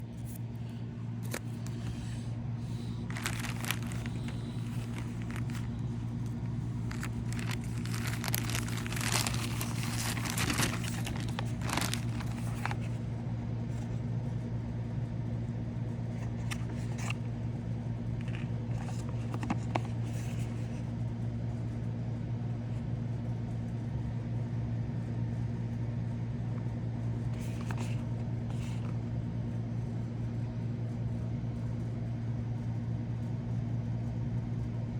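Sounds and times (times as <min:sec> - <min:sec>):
steady low hum: 0:00.0 - 0:34.9
packaging crinkling and rustling: 0:01.2 - 0:13.0, 0:16.2 - 0:17.2, 0:18.2 - 0:20.8, 0:27.4 - 0:28.9.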